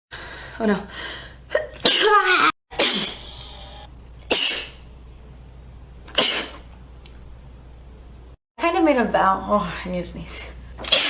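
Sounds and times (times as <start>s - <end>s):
woman sneezing: 1.6s - 3.2s.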